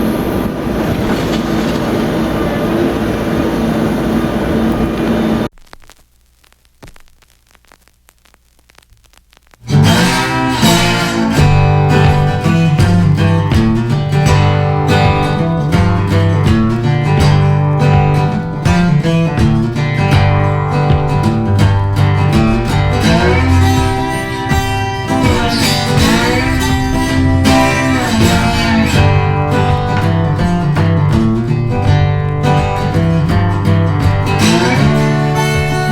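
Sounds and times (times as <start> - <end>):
guitar music with steady beat: 9.6 - 35.9.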